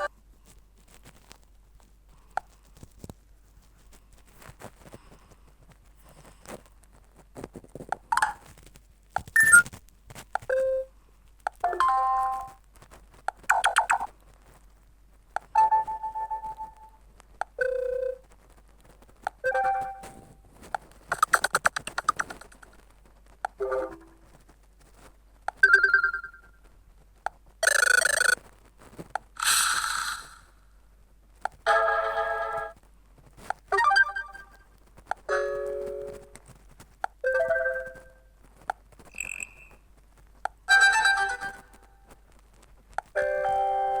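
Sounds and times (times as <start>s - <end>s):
phone ringtone and alert tones: 9.4s - 9.6s, 25.6s - 26.5s, 27.6s - 28.4s, 31.7s - 32.8s, 33.8s - 34.6s, 37.3s - 38.2s, 40.7s - 41.8s, 43.2s - 44.0s
phone ringtone snippets: 25.6s - 26.5s.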